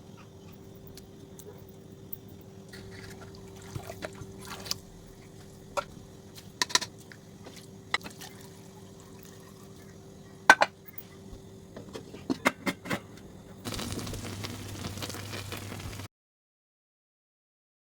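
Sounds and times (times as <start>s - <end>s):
utensils tapping pots and dishes: 6.6s - 7.0s, 10.5s - 11.2s, 11.8s - 13.1s
steady hiss: 13.6s - 16.1s.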